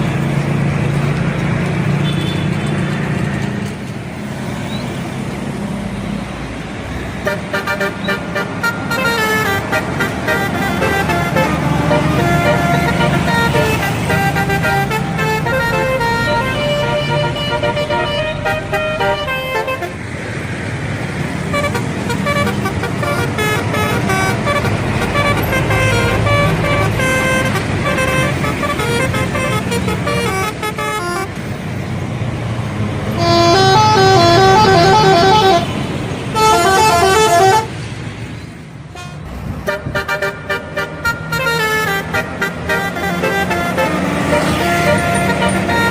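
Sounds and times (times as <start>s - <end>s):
bus engine rumble: 0.0s - 45.9s
bus horn playing melodies: 2.0s - 2.6s, 7.2s - 20.1s, 21.4s - 31.6s, 33.1s - 37.8s, 38.9s - 45.9s.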